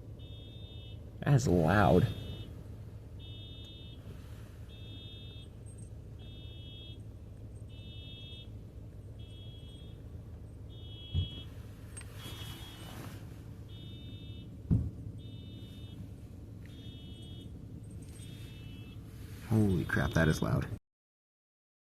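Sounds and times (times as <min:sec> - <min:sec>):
car alarm beeping: 0:00.0 - 0:20.7
low thump: 0:11.1 - 0:11.5, 0:14.6 - 0:15.1.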